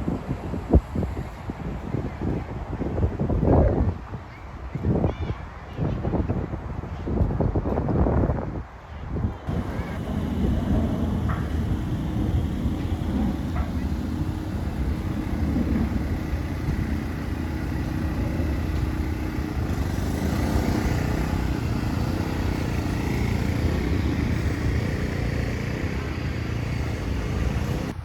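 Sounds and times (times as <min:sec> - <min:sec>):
vehicle engine rumble: 0:09.4 - 0:28.0.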